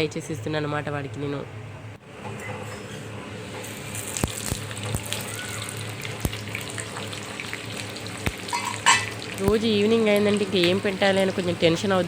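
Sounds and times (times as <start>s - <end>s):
fries sizzling in hot oil: 3.4s - 12.0s.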